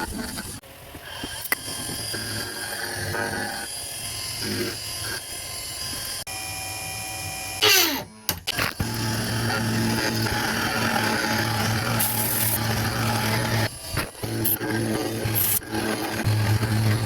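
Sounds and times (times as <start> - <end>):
milling machine spindle whine: 0.0 - 17.0.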